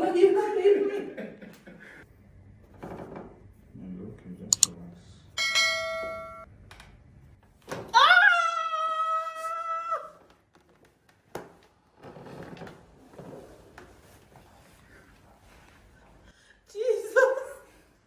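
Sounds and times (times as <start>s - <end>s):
woman screaming: 7.9s - 10.2s.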